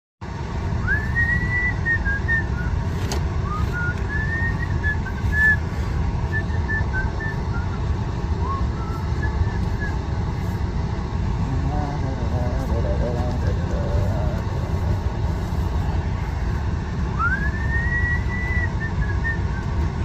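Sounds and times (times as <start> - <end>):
steady low rumble: 0.2 - 20.0
person whistling a slow tune: 0.8 - 2.7, 3.4 - 5.6, 6.3 - 7.8, 8.4 - 10.0, 17.1 - 19.7.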